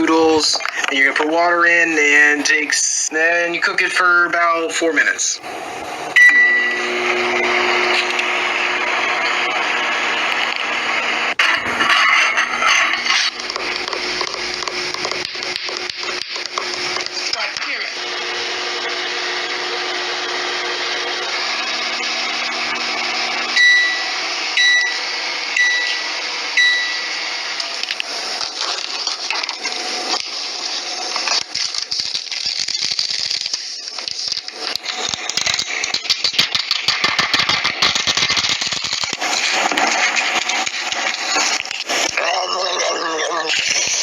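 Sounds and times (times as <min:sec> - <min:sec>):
microwave oven humming: 0:00.0 - 0:44.0
high beeps: 0:06.2 - 0:06.8, 0:23.6 - 0:25.0, 0:25.6 - 0:26.0, 0:26.6 - 0:27.1
container clicks and crinkling: 0:31.2 - 0:42.2.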